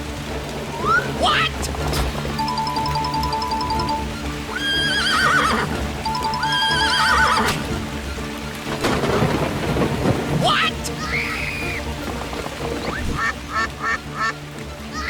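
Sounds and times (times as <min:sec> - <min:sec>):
background music: 0:00.0 - 0:15.0
rainstorm: 0:00.0 - 0:15.0
rising warbling cries: 0:02.4 - 0:07.5
thunder crash: 0:08.7 - 0:10.8.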